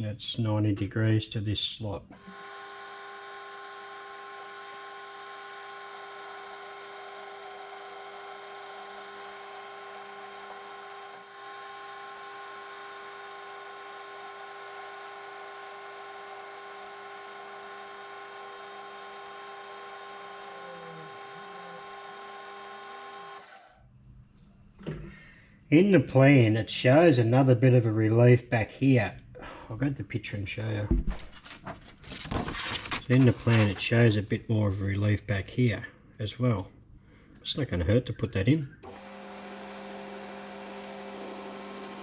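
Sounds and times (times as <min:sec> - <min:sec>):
metal lathe whine: 0:02.1 - 0:23.7, 0:38.8 - 0:42.0.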